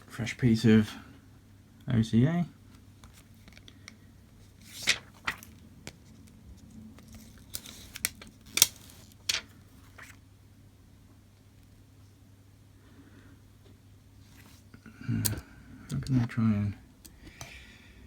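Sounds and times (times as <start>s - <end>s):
plastic film crinkling: 4.6s - 6.3s, 7.0s - 10.2s.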